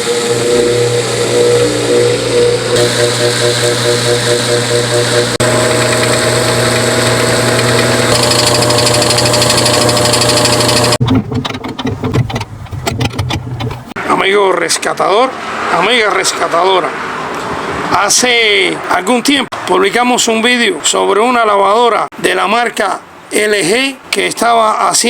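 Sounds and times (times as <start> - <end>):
washing machine pulsing hum: 0.0 - 14.0.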